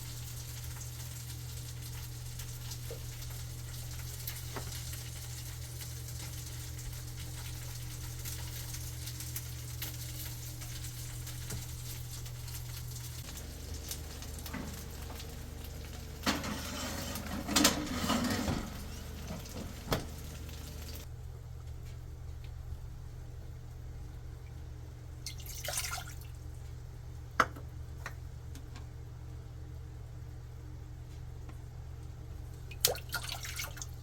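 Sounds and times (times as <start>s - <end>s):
food sizzling in a frying pan: 0.0s - 21.1s
utensil clinking and scraping in pan: 13.2s - 21.0s.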